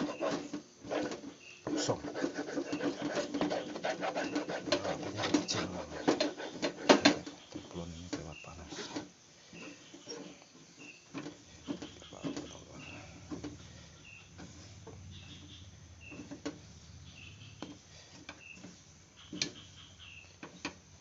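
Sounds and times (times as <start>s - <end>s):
spatula scraping a frying pan: 0.0s - 7.5s
knocks and clacks against pan: 2.5s - 7.4s.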